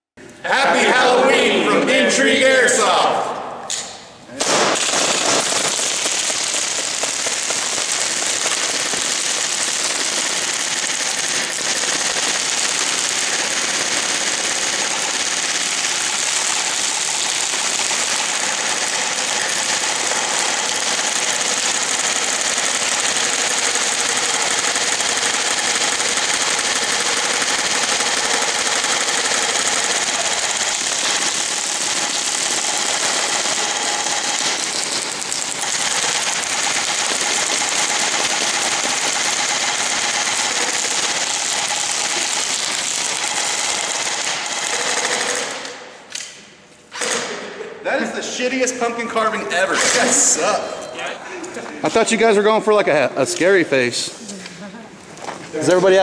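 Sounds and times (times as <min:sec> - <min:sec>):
pellets pattering into target: 0:04.4 - 0:45.2
airsoft guns firing full-auto: 0:04.4 - 0:47.4.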